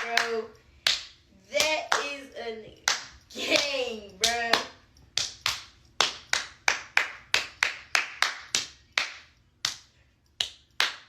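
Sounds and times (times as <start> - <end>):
hands clapping a beat: 0.0 - 2.2, 2.9 - 11.0.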